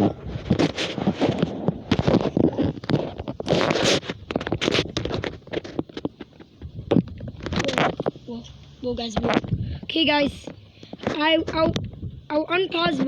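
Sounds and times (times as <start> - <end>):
wind buffeting microphone: 6.4 - 10.5, 11.1 - 13.0.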